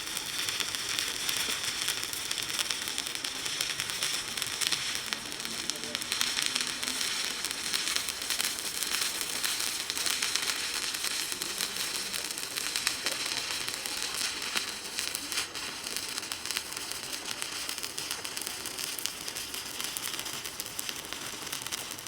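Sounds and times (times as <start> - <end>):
arc welding crackle and sizzle: 0.0 - 22.0.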